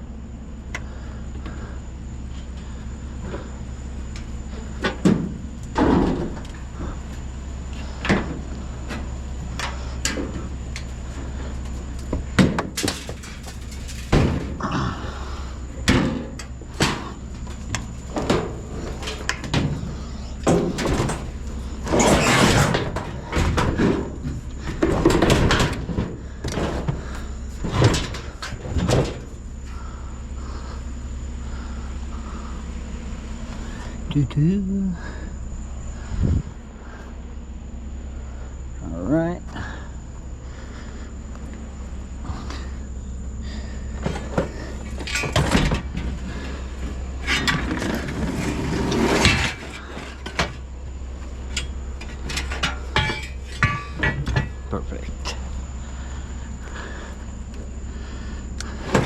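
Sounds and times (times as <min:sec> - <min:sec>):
steady low hum: 0:00.0 - 0:59.0
scrap metal knocks and clatters: 0:04.6 - 0:07.0, 0:07.9 - 0:14.7, 0:15.8 - 0:29.9, 0:44.0 - 0:50.7, 0:51.3 - 0:55.5, 0:58.7 - 0:59.0.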